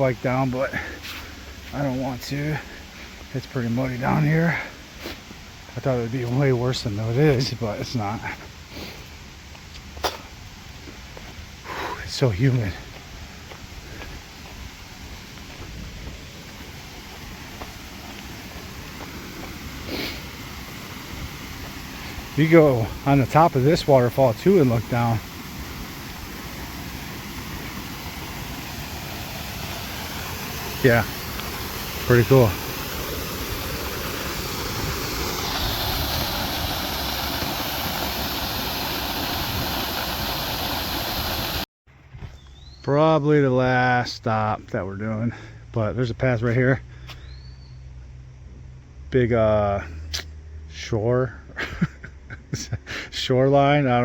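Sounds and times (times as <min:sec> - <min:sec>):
waterfall pouring: 0:16.1 - 0:41.7.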